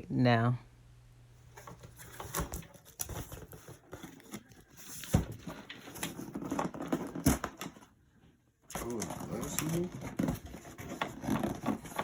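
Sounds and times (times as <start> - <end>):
package handling knocks and rustles: 1.5 - 7.9.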